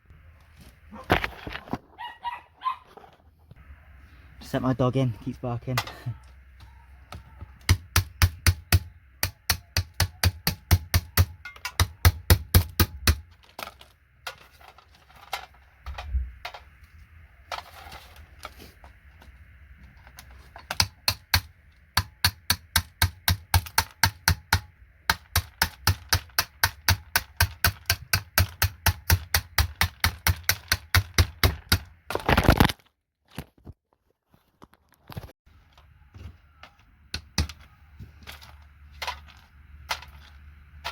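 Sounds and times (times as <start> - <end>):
rattle: 13.2 - 18.6, 36.6 - 40.9.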